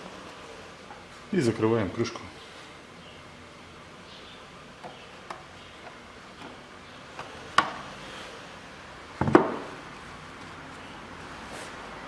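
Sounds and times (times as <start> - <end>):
thump: 9.2 - 9.7.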